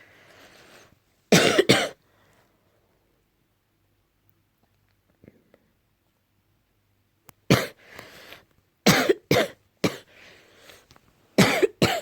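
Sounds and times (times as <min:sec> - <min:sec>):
noisy breaths: 0:00.0 - 0:01.1, 0:07.8 - 0:08.5, 0:10.0 - 0:11.1
person coughing: 0:01.3 - 0:02.0, 0:07.5 - 0:07.8, 0:08.9 - 0:10.1, 0:11.4 - 0:12.0.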